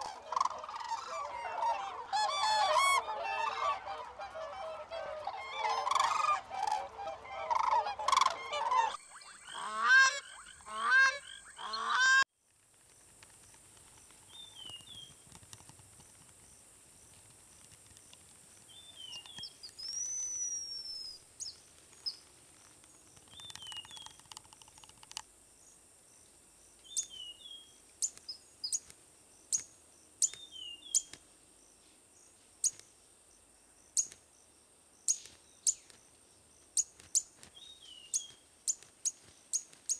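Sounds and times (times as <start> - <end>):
birds honking: 0.0 - 12.2
faint bird chirps: 7.4 - 12.0, 23.3 - 24.9, 26.8 - 28.9, 29.5 - 31.2
steady high hiss: 12.5 - 39.9.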